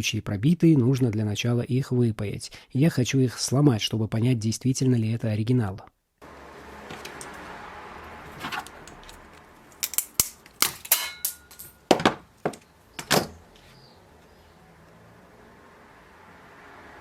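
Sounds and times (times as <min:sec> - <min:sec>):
plastic packages snapping apart: 0:09.7 - 0:11.7.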